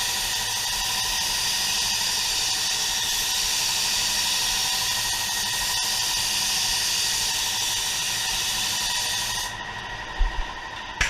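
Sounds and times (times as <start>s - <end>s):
spray gun air hiss: 1.5s - 9.5s.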